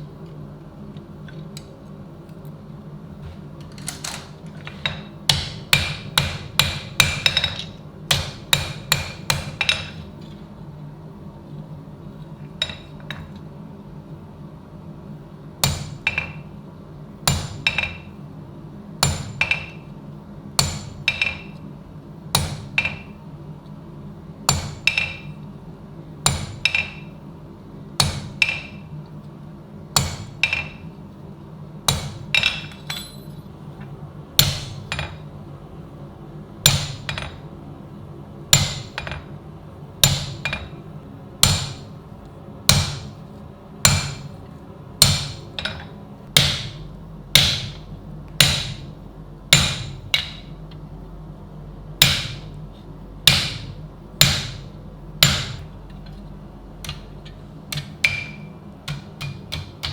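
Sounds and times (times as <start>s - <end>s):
hammer striking steel: 5.3s - 10.0s, 19.0s - 19.8s, 24.5s - 25.3s, 30.0s - 30.8s, 31.9s - 33.4s, 34.4s - 35.2s, 36.7s - 37.4s, 38.6s - 39.3s, 40.0s - 40.7s, 41.4s - 41.9s, 42.7s - 43.2s, 43.8s - 44.3s, 45.0s - 46.8s, 47.4s - 47.8s, 48.4s - 48.9s, 49.6s - 50.6s, 52.0s - 52.6s, 53.3s - 55.7s, 57.7s - 59.9s.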